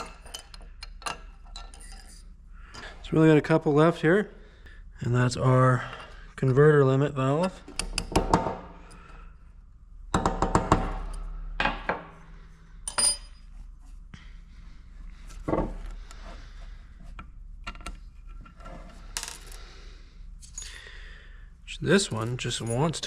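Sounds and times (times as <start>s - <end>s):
metal parts tapping and clinking: 0.0s - 2.2s, 12.8s - 13.4s.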